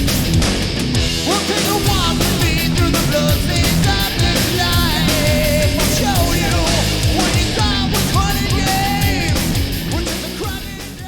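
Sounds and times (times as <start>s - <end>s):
distorted guitar: 0.0s - 11.0s
loud rock music: 0.0s - 11.0s
pounding drums: 0.0s - 11.0s.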